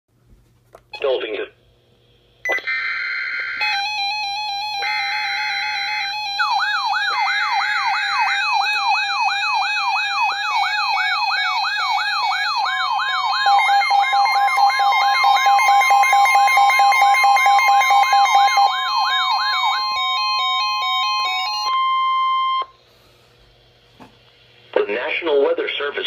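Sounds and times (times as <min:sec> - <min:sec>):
steady electronic tones: 0:02.4 - 0:22.8
warning alarm tone: 0:02.4 - 0:22.8
siren sweeping upward: 0:02.6 - 0:22.7.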